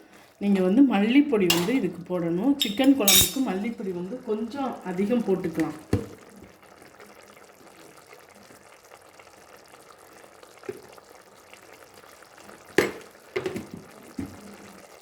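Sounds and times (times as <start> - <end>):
curry simmering in a pot: 0.0 - 15.0
utensil clinking against pot: 1.5 - 1.8, 2.6 - 3.6.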